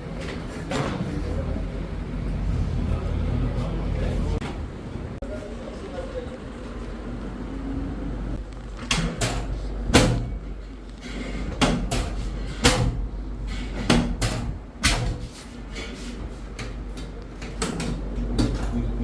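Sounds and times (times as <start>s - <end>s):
steady low hum: 0.0s - 19.0s
sharp knocks and slaps: 8.9s - 10.4s, 11.5s - 13.1s, 13.7s - 15.3s.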